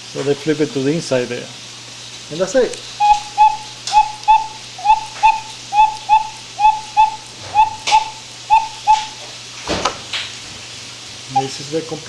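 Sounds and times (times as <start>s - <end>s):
cuckoo clock call: 2.6s - 9.4s, 10.2s - 11.6s.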